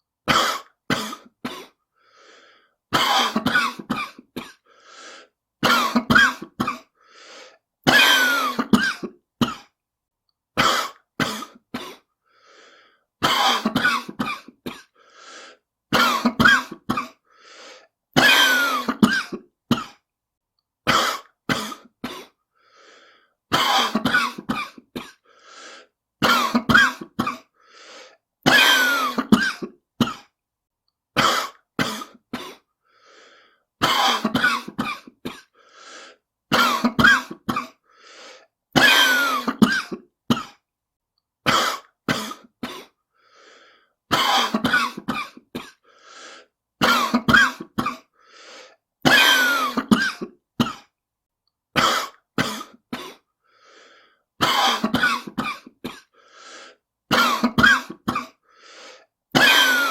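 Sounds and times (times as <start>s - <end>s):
person coughing: 0.3s - 1.8s, 2.9s - 4.7s, 5.6s - 7.0s, 7.8s - 9.8s, 10.6s - 12.1s, 13.2s - 15.0s, 15.9s - 17.2s, 18.2s - 20.0s, 20.8s - 22.4s, 23.5s - 25.3s, 26.2s - 27.6s, 28.4s - 30.4s, 31.2s - 32.7s, 33.8s - 35.6s, 36.5s - 37.8s, 38.8s - 40.6s, 41.4s - 43.0s, 44.1s - 45.9s, 46.8s - 48.2s, 49.0s - 50.9s, 51.8s - 53.3s, 54.4s - 56.2s, 57.1s - 58.4s, 59.3s - 59.9s
faint breaths: 1.9s - 2.8s, 4.6s - 5.4s, 6.9s - 7.6s, 12.0s - 13.1s, 14.9s - 15.7s, 17.2s - 18.0s, 22.5s - 23.4s, 25.2s - 26.0s, 27.5s - 28.2s, 32.7s - 33.7s, 35.4s - 36.3s, 37.8s - 38.6s, 43.1s - 44.0s, 45.8s - 46.6s, 48.1s - 48.8s, 53.4s - 54.3s, 56.0s - 56.9s, 58.4s - 59.1s.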